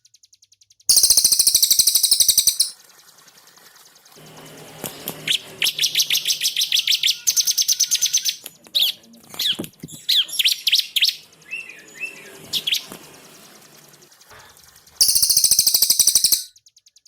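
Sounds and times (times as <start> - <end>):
songbirds trilling and chirping: 0.9 - 2.8, 15.0 - 16.5.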